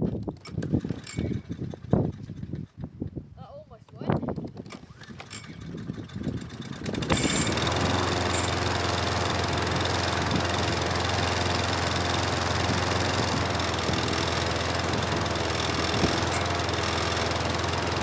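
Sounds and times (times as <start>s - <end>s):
lawn mower engine starting and running: 0.0s - 3.4s, 4.3s - 18.0s.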